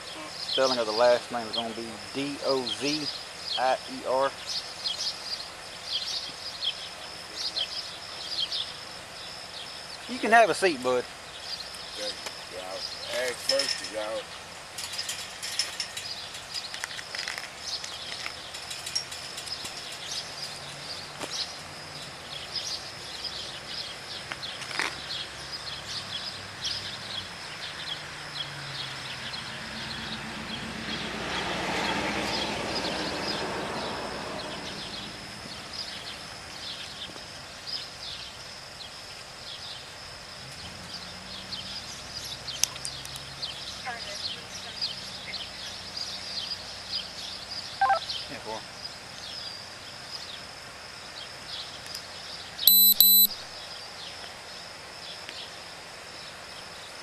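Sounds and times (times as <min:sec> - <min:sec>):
vehicle passing by: 0:25.9 - 0:35.9
high-pitched chirping: 0:47.8 - 0:48.2, 0:52.7 - 0:53.4.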